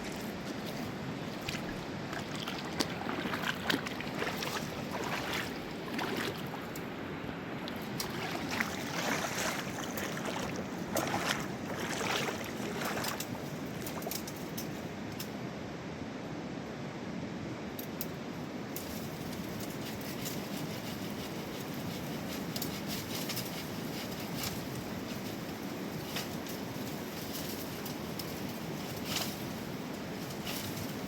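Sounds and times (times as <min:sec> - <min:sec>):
mountain river rushing: 0:00.0 - 0:13.4
bursts of water noise: 0:01.2 - 0:07.0, 0:07.6 - 0:14.1.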